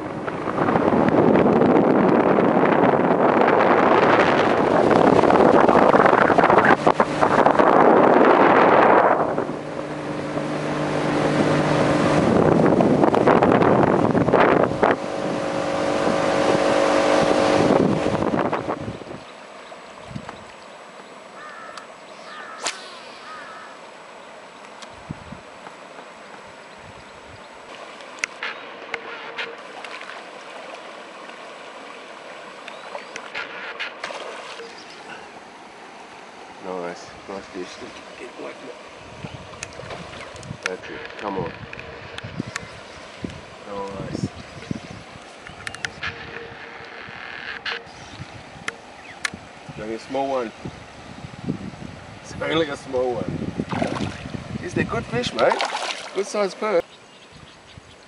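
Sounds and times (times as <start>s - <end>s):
wind rushing on microphone: 0.0s - 19.4s, 20.0s - 20.6s, 24.8s - 25.6s, 26.8s - 27.6s, 36.7s - 58.0s
boat motor running: 0.0s - 57.7s
water splashes: 27.6s - 47.0s, 52.2s - 56.9s.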